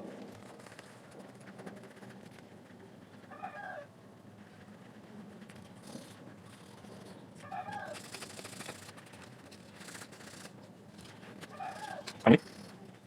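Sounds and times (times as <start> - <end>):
animal call: 3.3 - 3.9, 7.4 - 8.2, 11.4 - 12.7.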